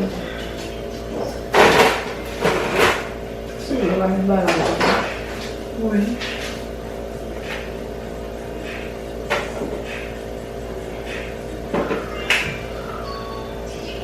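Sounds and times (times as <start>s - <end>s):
kitchen items knocking and clattering: 1.0s - 6.6s.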